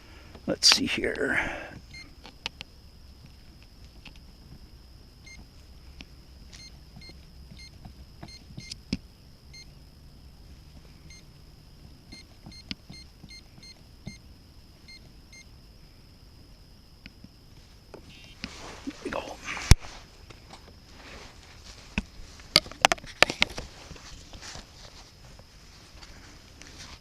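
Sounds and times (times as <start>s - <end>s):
keypad electronic beeps: 6.6s - 8.8s, 12.1s - 14.2s.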